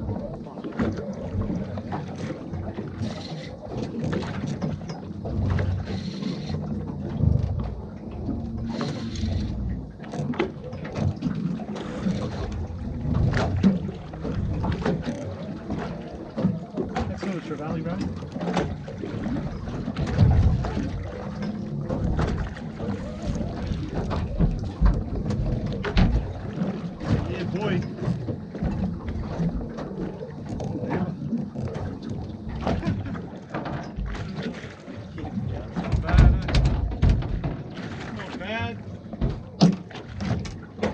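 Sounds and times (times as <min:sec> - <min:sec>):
water against boat hull: 0:00.0 - 0:40.9
wind: 0:00.0 - 0:40.9
knocks and clatters on deck: 0:35.9 - 0:37.6.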